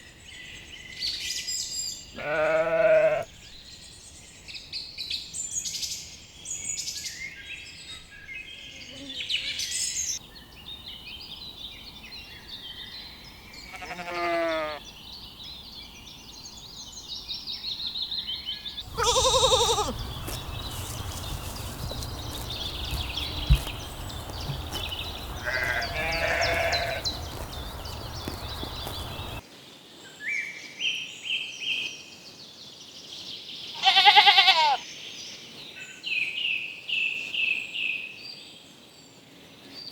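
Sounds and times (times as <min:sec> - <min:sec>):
sheep bleating: 0:02.2 - 0:03.3, 0:13.7 - 0:14.8, 0:18.9 - 0:28.0, 0:33.8 - 0:34.8
steady outdoor hiss: 0:07.6 - 0:30.3.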